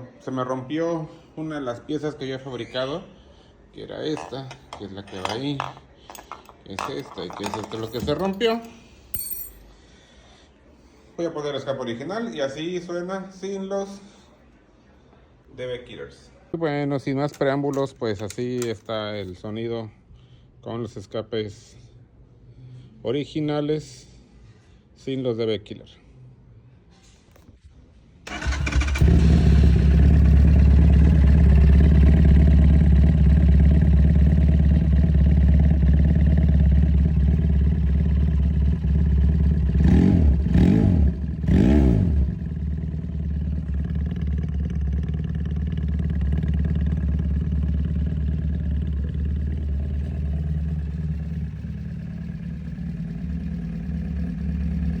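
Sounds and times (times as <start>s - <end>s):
loud motorcycle engine: 28.3s - 55.0s.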